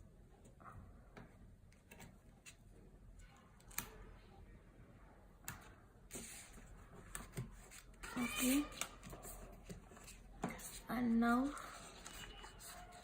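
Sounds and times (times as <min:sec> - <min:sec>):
paper rustling: 0:11.5 - 0:13.0.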